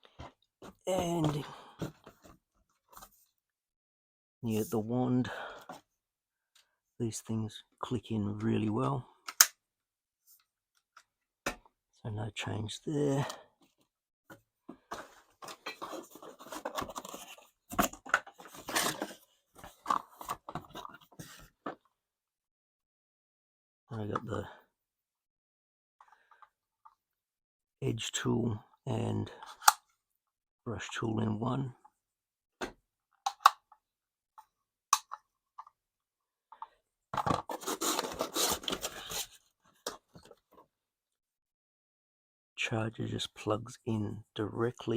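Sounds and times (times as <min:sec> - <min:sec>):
plastic scraping and rustling: 0:14.8 - 0:21.4, 0:37.2 - 0:40.6
packaging rustle: 0:37.2 - 0:39.4.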